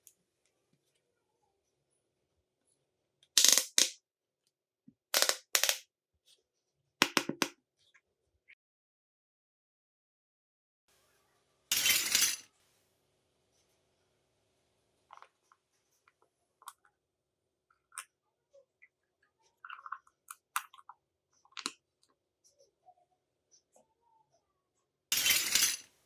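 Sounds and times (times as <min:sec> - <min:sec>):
toy kitchen pieces clicking: 0:03.4 - 0:04.0, 0:05.2 - 0:05.8, 0:11.7 - 0:12.5, 0:21.5 - 0:21.8, 0:25.1 - 0:25.9.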